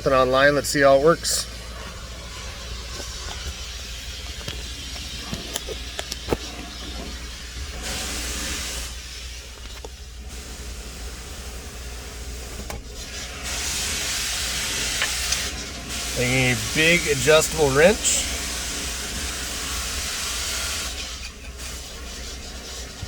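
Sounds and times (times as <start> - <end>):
hiss: 1.2 - 23.0
clicks and clunks of car controls: 12.5 - 13.0.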